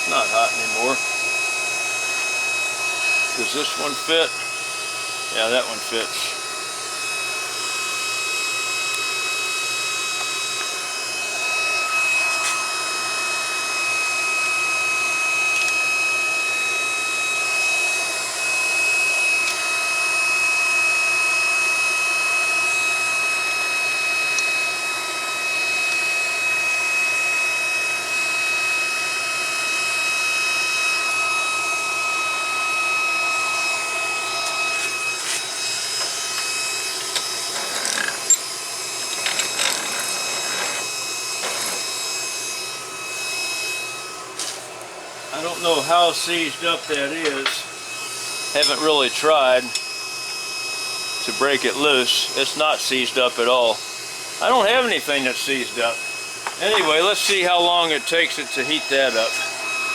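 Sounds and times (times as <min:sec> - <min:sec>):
high whine: 0:00.0 - 0:04.7
cooling fan hissing: 0:27.8 - 0:59.9.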